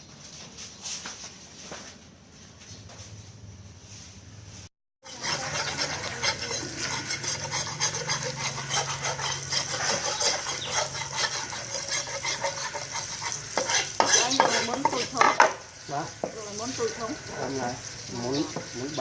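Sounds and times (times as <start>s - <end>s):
fish sizzling and crackling: 5.0s - 19.0s.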